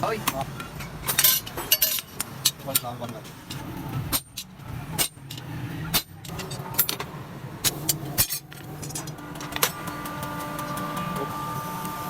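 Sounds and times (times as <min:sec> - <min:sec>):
steady low hum: 0:00.0 - 0:12.0
metal knocks and clinks: 0:01.0 - 0:02.9.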